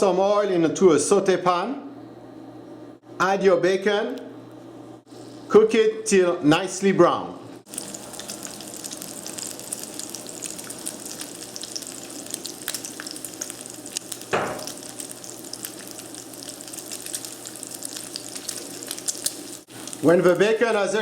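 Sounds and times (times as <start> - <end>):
bacon sizzling in oil: 7.7 - 21.0.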